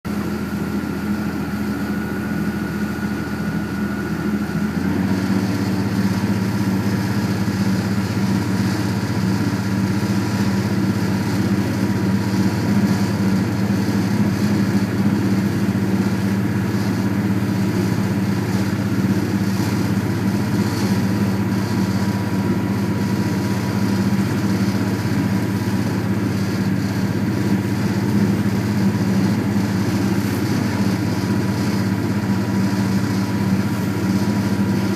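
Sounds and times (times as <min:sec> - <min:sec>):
boat engine running: 0:00.0 - 0:34.9.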